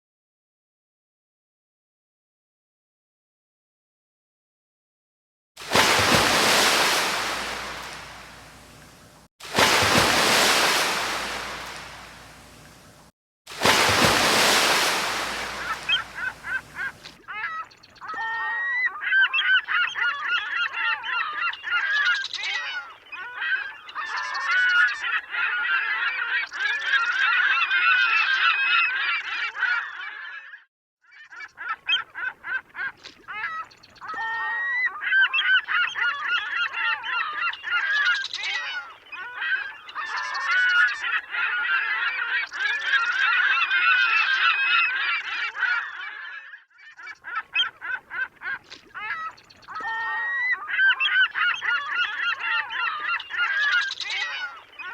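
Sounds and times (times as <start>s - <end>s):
flock of birds calling: 13.7s - 22.8s, 33.4s - 54.9s.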